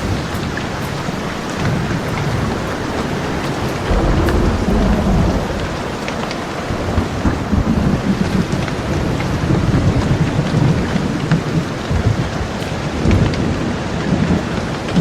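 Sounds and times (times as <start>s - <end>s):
heavy rain falling: 0.0s - 15.0s
rolling thunder: 1.6s - 12.4s.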